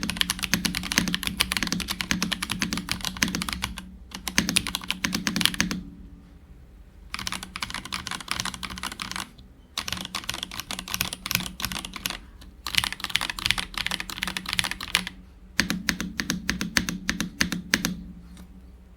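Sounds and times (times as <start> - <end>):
mechanical keyboard typing: 0.0 - 5.8, 7.1 - 18.0.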